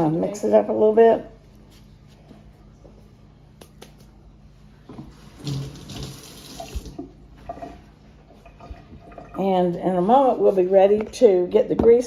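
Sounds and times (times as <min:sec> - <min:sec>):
water running from a tap: 0:05.4 - 0:07.8.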